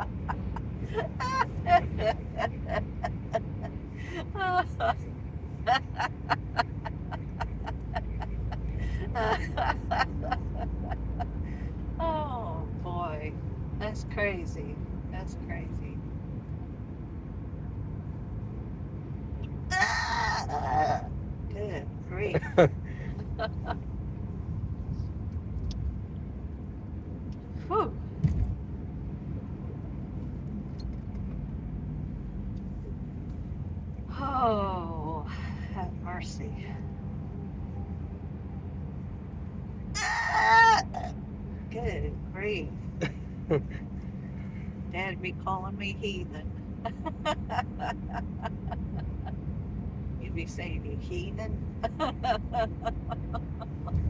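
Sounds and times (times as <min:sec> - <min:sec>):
car road noise: 0:00.0 - 0:54.0
woman hiccuping: 0:40.0 - 0:41.1.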